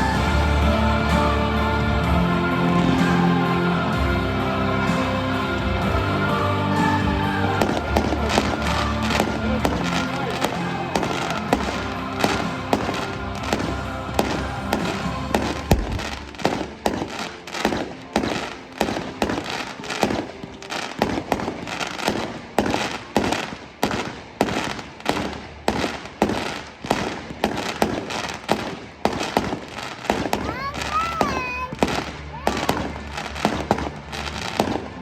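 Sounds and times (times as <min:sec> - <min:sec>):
fireworks bangs and bursts: 0:00.0 - 0:35.0
music playing: 0:00.0 - 0:35.0.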